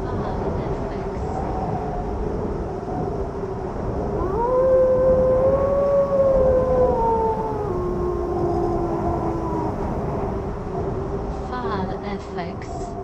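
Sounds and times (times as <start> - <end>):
wind rushing: 0.0 - 13.0
wolf howling: 4.0 - 10.5.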